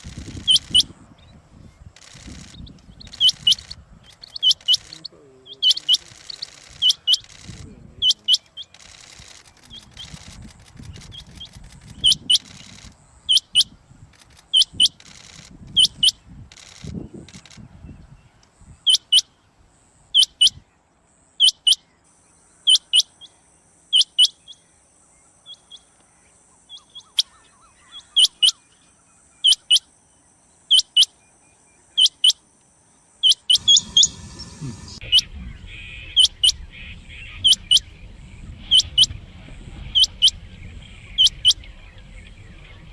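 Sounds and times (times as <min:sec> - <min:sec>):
quail calling high double notes: 0:33.5 - 0:36.6.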